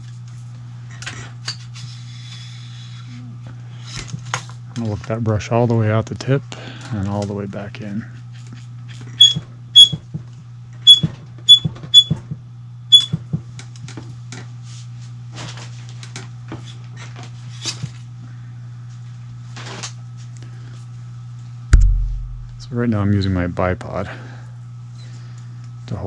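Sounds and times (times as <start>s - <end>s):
steady low hum: 17.9s - 26.0s
thump: 21.8s - 22.6s.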